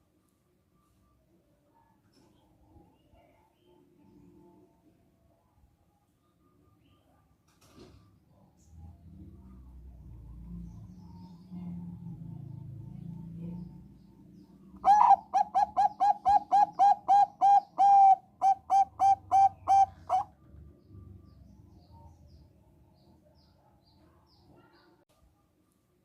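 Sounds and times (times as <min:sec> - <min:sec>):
dove cooing: 0:14.8 - 0:20.3.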